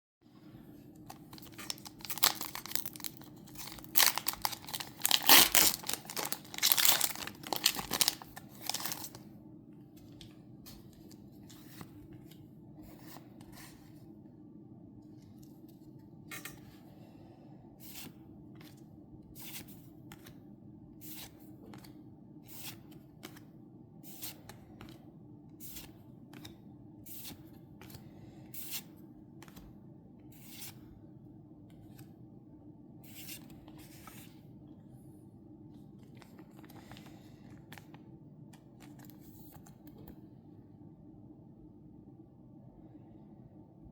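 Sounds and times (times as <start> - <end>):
foil wrapper crinkling and tearing: 1.1 - 9.2.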